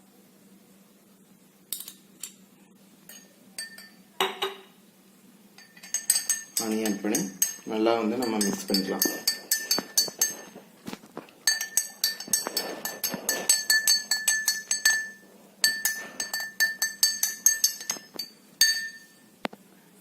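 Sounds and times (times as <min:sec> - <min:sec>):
spoon clinking against bowl: 0:03.1 - 0:04.7, 0:05.6 - 0:10.6, 0:11.4 - 0:19.2.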